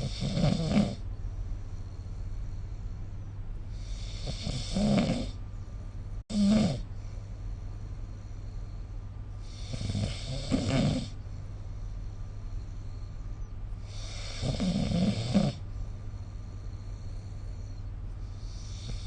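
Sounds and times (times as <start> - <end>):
person snoring: 0.0 - 1.0, 3.7 - 5.4, 6.3 - 6.9, 9.5 - 11.2, 13.9 - 15.6
steady low hum: 0.0 - 19.0.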